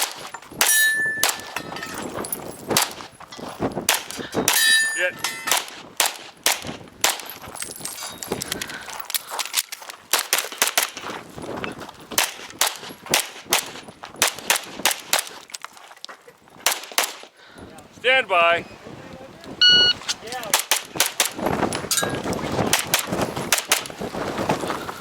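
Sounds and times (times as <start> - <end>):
pistol shots: 0.0 - 1.6, 3.9 - 7.4, 12.2 - 15.4, 20.5 - 21.4.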